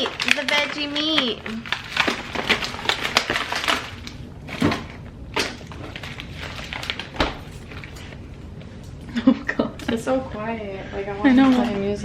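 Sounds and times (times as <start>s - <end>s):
packaging rustling and clicking: 0.0s - 8.9s.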